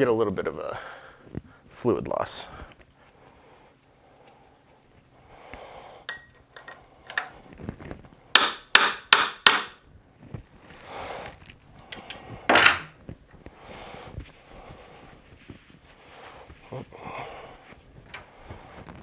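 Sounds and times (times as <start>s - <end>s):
tools being handled: 6.1s - 8.0s, 10.7s - 13.1s
hammer striking: 8.4s - 9.8s.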